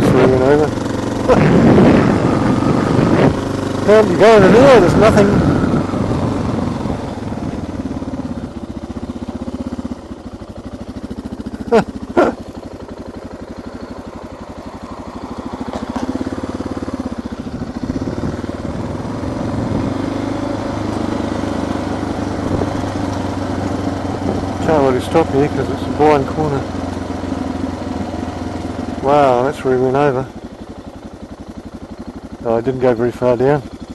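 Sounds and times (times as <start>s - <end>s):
motorcycle engine running: 0.0s - 33.9s
wind rush: 1.2s - 8.5s, 17.8s - 20.1s, 22.4s - 23.0s.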